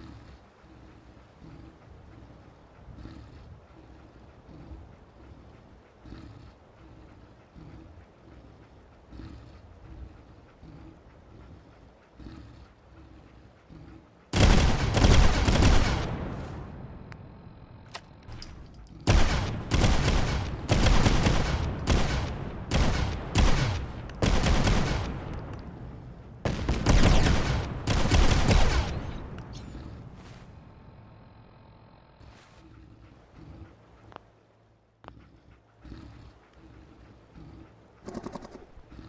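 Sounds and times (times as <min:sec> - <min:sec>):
pistol gunshots: 0:14.4 - 0:16.2, 0:19.1 - 0:25.3, 0:26.4 - 0:29.2.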